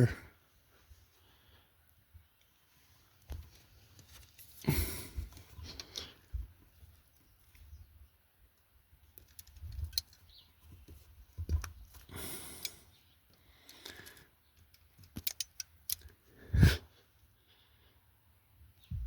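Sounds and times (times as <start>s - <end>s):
knife clicking and scraping wires: 13.7s - 16.1s.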